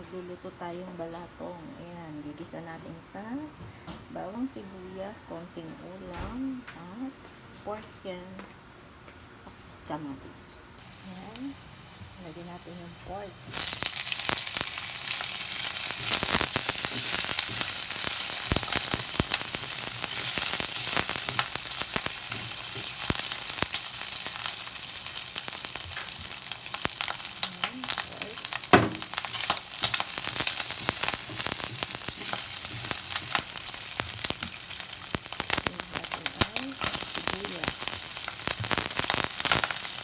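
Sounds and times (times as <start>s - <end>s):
pork sizzling in hot oil: 10.8s - 40.0s
sharp knock: 28.7s - 29.1s.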